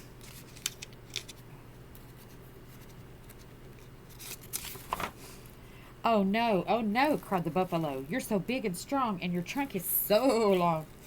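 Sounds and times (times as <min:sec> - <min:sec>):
steady low hum: 0:00.0 - 0:11.0
paper pages rustling: 0:00.2 - 0:05.5.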